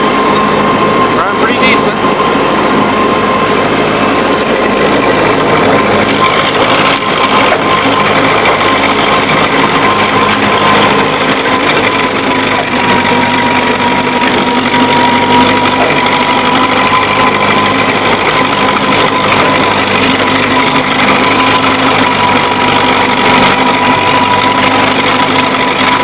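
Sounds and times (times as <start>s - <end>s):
high whine: 0.0s - 26.0s
tractor engine running: 0.0s - 26.0s.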